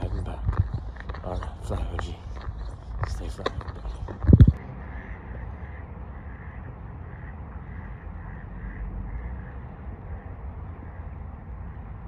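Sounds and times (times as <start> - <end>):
low rumble: 0.0 - 12.0.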